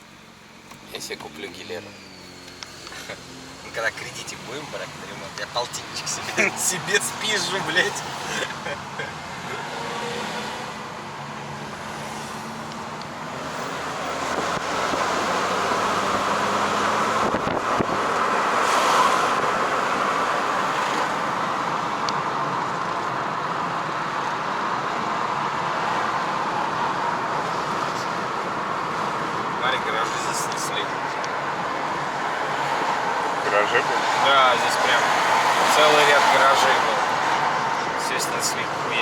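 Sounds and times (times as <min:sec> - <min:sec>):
car road and engine noise: 0:00.0 - 0:39.0.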